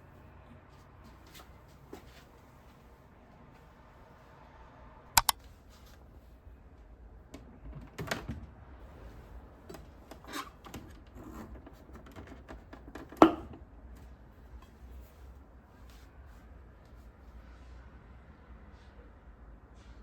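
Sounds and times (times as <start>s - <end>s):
sharp double click: 5.2s - 5.4s.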